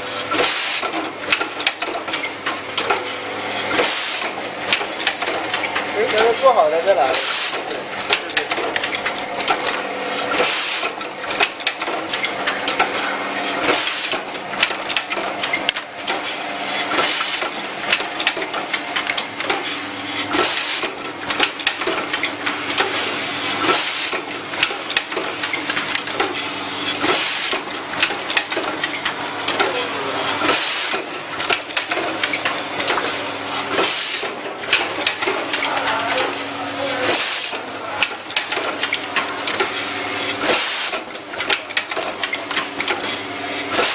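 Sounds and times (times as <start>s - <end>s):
steady machine hum: 0.0s - 43.9s
machine clicking and clattering: 0.2s - 43.9s.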